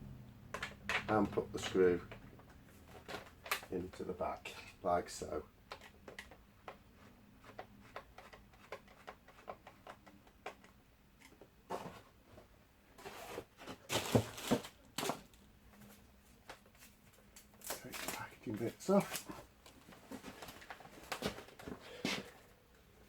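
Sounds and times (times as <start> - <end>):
plastic parts clicking: 0.5 - 3.9, 5.7 - 6.8
rustling and knocks: 11.4 - 15.4.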